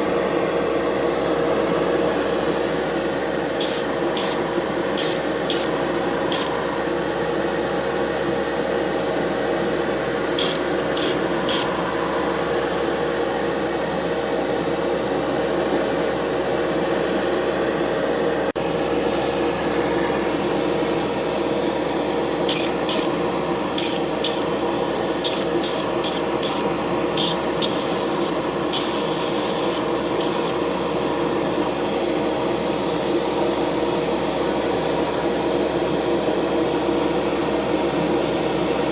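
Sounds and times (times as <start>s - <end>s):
steady hum: 2.0s - 7.3s, 10.1s - 13.6s, 22.1s - 31.6s
paint spraying in hissing bursts: 3.6s - 4.4s, 5.0s - 5.7s, 6.3s - 6.5s, 10.4s - 11.7s, 22.5s - 23.1s, 23.7s - 24.5s, 25.2s - 26.6s, 27.2s - 30.5s.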